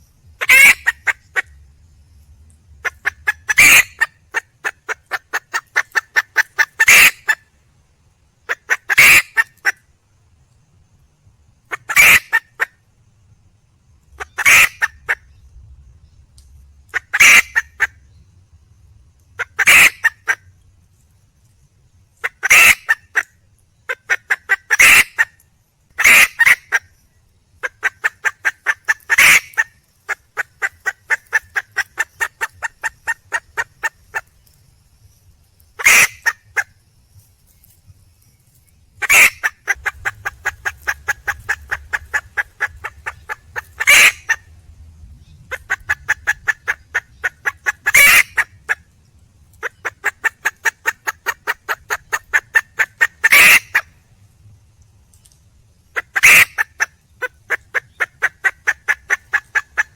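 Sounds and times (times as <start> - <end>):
junglefowl hen calling: 0.4 - 1.7, 2.8 - 7.5, 8.4 - 9.8, 11.7 - 12.8, 14.1 - 15.3, 16.9 - 18.0, 19.4 - 20.5, 22.2 - 25.4, 26.0 - 27.0, 27.6 - 34.6, 35.7 - 36.8, 39.0 - 44.6, 45.4 - 48.9, 49.6 - 54.0, 55.9 - 59.9
rapid clucks: 2.8 - 7.4, 27.6 - 34.6, 39.0 - 44.5, 45.5 - 48.8, 49.6 - 53.9, 56.0 - 59.9.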